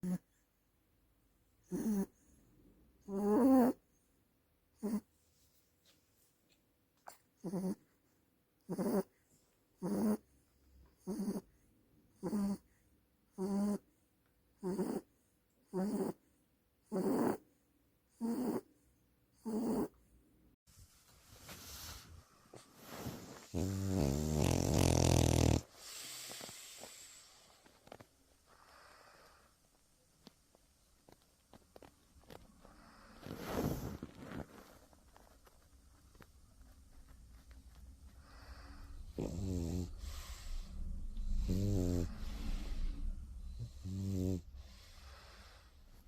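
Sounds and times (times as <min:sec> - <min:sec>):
dog snoring: 0:00.0 - 0:00.3, 0:01.6 - 0:02.2, 0:03.0 - 0:03.8, 0:04.8 - 0:05.1, 0:07.1 - 0:07.9, 0:08.6 - 0:09.2, 0:09.8 - 0:10.3, 0:11.0 - 0:11.5, 0:12.1 - 0:12.7, 0:13.3 - 0:13.9, 0:14.6 - 0:16.2, 0:16.8 - 0:17.4, 0:18.1 - 0:18.7, 0:19.4 - 0:20.0, 0:22.8 - 0:29.5, 0:31.8 - 0:34.9, 0:38.1 - 0:46.0
breathy rush of air: 0:38.0 - 0:39.2, 0:39.8 - 0:46.0.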